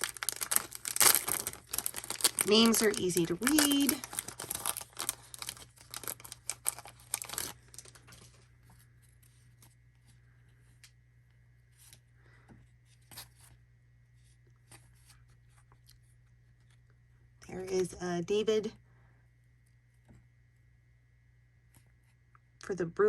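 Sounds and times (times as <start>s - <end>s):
card pack wrapper crinkling: 0.0s - 9.7s.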